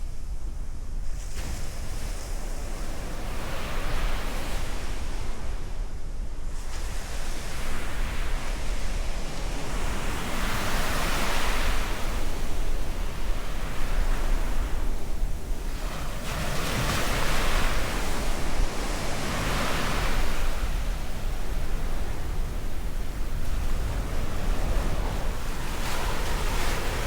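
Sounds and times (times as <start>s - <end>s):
wind rumbling on microphone: 0.0s - 27.0s
waves breaking: 10.0s - 27.0s.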